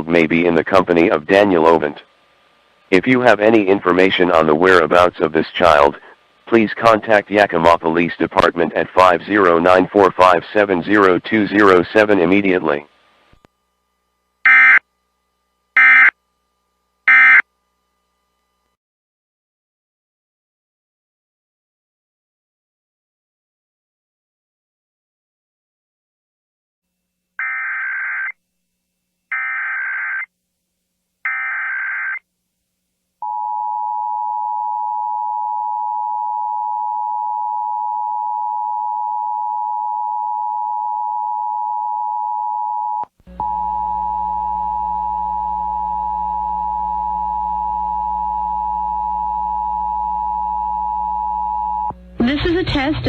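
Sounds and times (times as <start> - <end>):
short data bursts: 14.4 - 14.8, 15.8 - 16.2, 17.1 - 17.4
two-tone attention signal: 17.1 - 17.4
low hum: 32.4 - 53.0.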